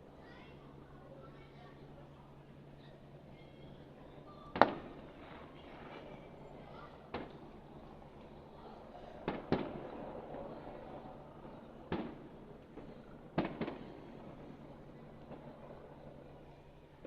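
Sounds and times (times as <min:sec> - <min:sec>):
fireworks booming: 0:09.2 - 0:09.8, 0:11.9 - 0:12.3, 0:13.4 - 0:14.0.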